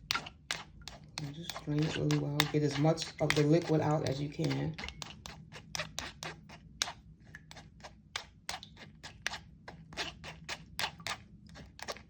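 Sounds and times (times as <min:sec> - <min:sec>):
kitchen strainer clicking and scraping: 0:00.0 - 0:06.0.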